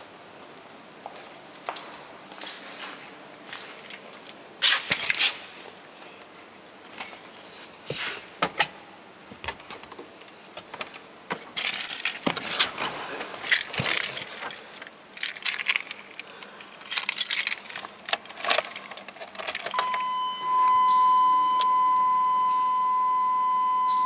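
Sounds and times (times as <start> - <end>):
small metal objects clinking: 13.4 - 19.8.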